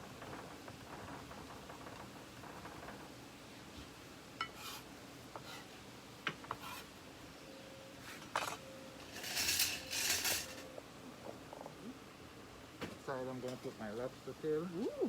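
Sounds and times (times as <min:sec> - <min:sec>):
utensils and dishes clinking: 0:08.3 - 0:10.7.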